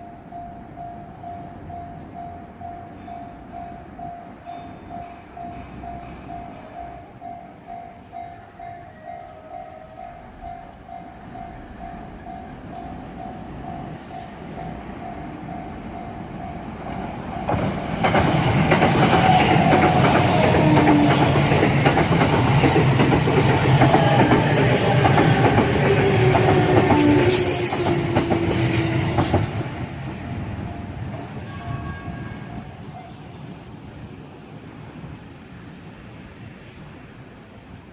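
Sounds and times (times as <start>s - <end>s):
electric train passing: 0.0s - 37.9s
train wheels clattering: 4.7s - 7.0s, 16.6s - 32.6s.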